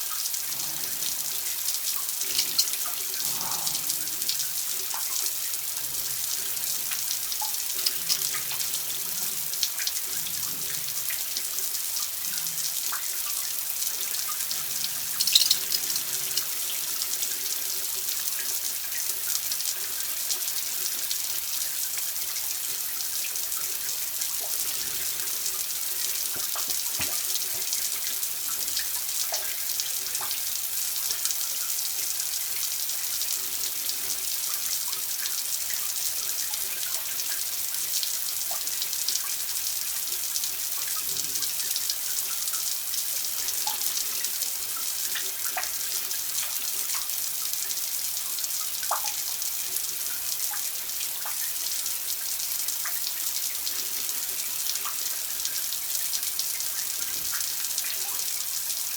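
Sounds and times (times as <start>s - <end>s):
running water hiss: 0.0s - 58.9s
water drops plinking: 14.8s - 16.5s.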